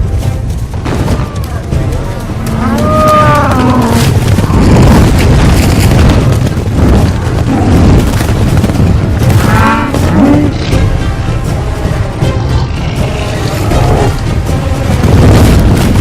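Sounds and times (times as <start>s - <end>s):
dramatic film score: 0.0s - 16.0s.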